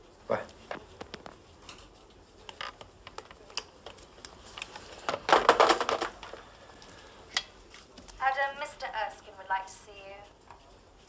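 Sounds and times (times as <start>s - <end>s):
keyboard clatter: 0.3s - 7.1s.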